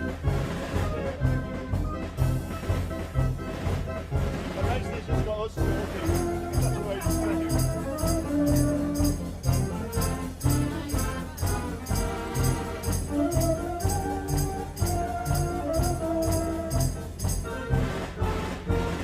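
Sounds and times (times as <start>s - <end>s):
dance organ melody: 0.0s - 19.0s.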